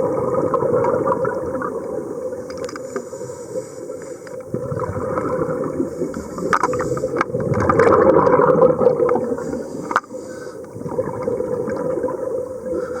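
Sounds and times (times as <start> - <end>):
water churning and gurgling: 0.0 - 13.0
small clicks: 2.4 - 3.1, 9.8 - 10.8.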